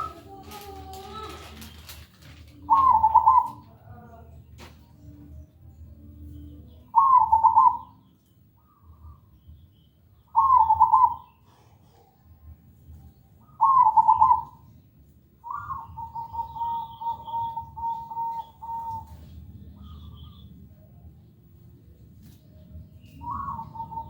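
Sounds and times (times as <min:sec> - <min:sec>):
dove cooing: 0:00.0 - 0:03.7, 0:06.9 - 0:07.9, 0:10.3 - 0:11.4, 0:13.4 - 0:14.6, 0:15.4 - 0:20.4, 0:23.2 - 0:24.0
faint bird chirps: 0:00.0 - 0:24.0.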